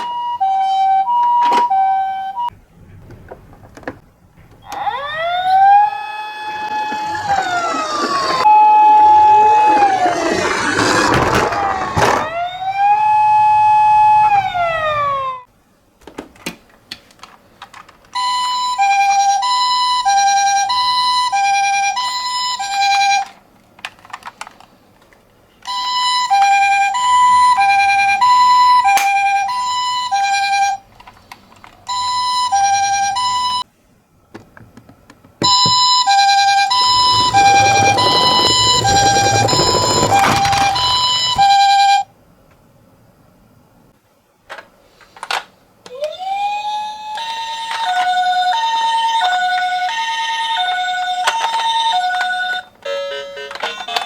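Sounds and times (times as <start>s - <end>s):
toy ambulance siren: 0.0s - 2.5s, 4.6s - 15.5s, 18.2s - 23.4s, 25.6s - 30.8s, 31.9s - 33.6s, 35.4s - 42.0s, 45.8s - 54.0s.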